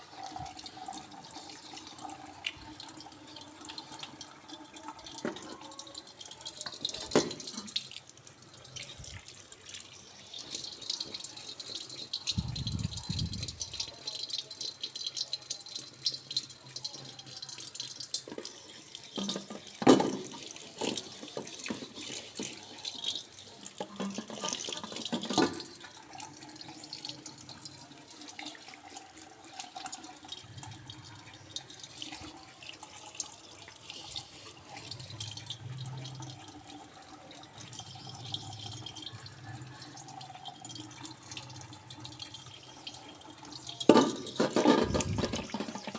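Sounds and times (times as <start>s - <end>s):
tap water running into sink: 0.0s - 45.9s
pan knocking: 43.9s - 45.9s.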